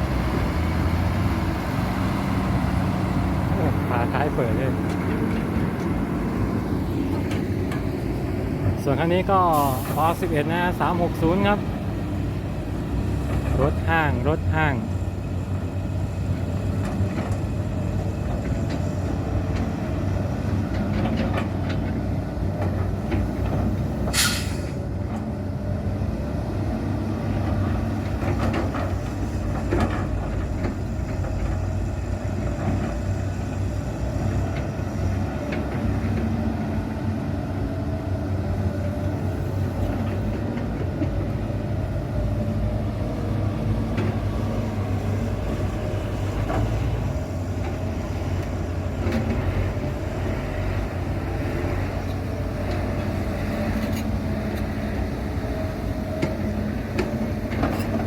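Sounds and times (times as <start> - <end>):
dump truck idling: 0.0 - 25.7
excavator working: 0.0 - 58.0
short sharp hiss or clang: 24.1 - 24.8.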